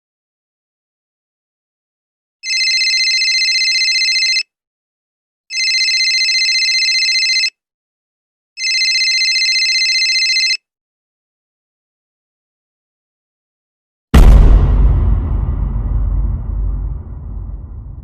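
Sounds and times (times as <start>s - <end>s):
telephone ringing: 2.4s - 4.4s, 5.5s - 7.6s, 8.6s - 10.6s.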